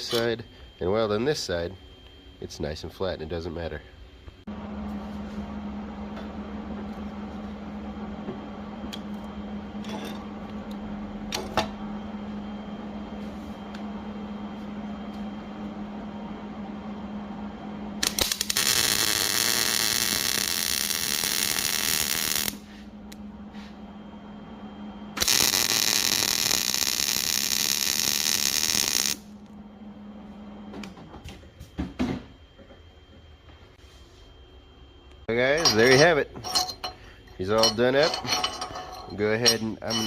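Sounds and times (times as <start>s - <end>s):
electrical hum: 0.0s - 40.0s
welding arc crackling: 18.0s - 22.6s, 25.2s - 29.3s.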